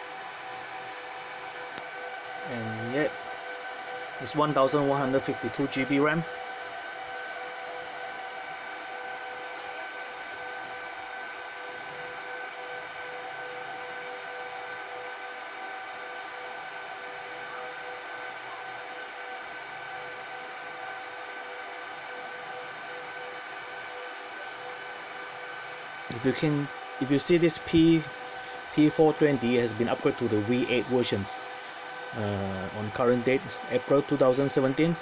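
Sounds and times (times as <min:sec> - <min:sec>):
server cooling fans whooshing: 0:00.0 - 0:35.0.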